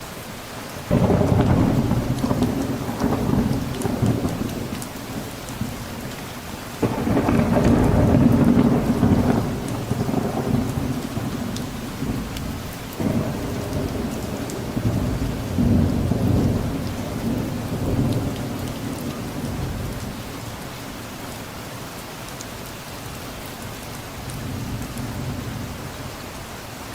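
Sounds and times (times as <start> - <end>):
steady rain: 0.0 - 26.9
rolling thunder: 0.9 - 20.6.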